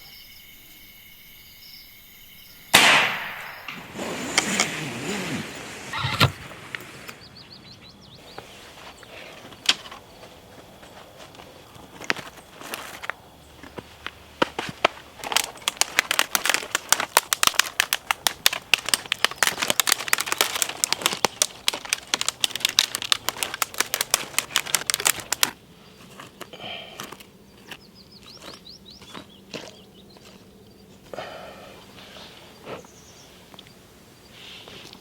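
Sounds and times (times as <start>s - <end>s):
dry material crackling: 14.8s - 25.6s.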